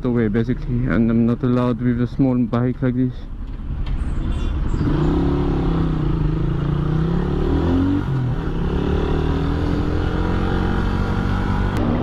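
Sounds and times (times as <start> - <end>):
wind and road noise: 0.0 - 12.0
motorcycle engine running: 3.5 - 12.0.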